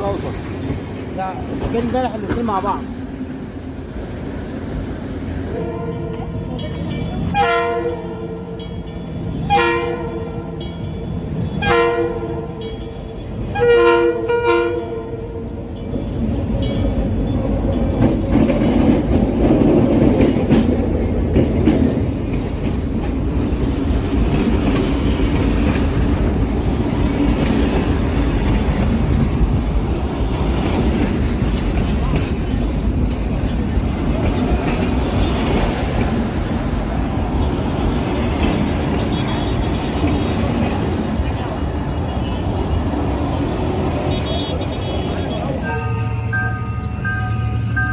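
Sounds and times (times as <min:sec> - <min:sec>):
locomotive rumbling on rails: 0:00.0 - 0:47.9
locomotive horn chord blasts: 0:07.4 - 0:08.2, 0:09.4 - 0:10.4, 0:11.6 - 0:12.5, 0:13.6 - 0:15.2, 0:45.6 - 0:47.9.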